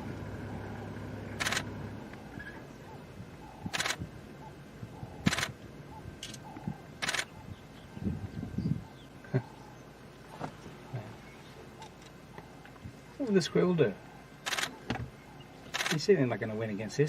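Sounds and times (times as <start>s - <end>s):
short sharp noise bursts: 5.2s - 5.6s.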